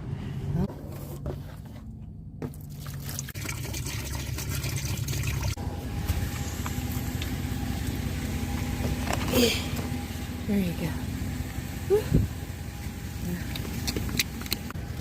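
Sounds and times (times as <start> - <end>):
water pouring into bowl: 2.8 - 5.6.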